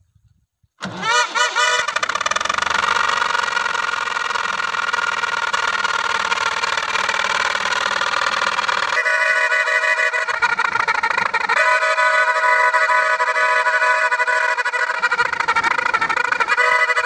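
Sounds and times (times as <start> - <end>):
tractor engine running: 0.8 - 17.0.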